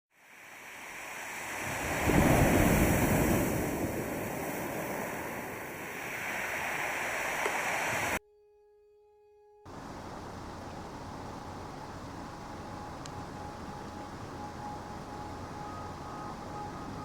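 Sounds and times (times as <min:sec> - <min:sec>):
rushing noise: 0:00.2 - 0:08.2
faint two-note tone: 0:08.2 - 0:17.0.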